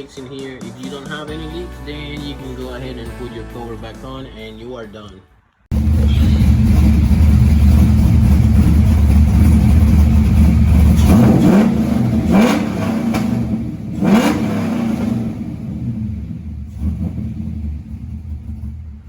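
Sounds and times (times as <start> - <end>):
car engine running: 5.7 - 19.0.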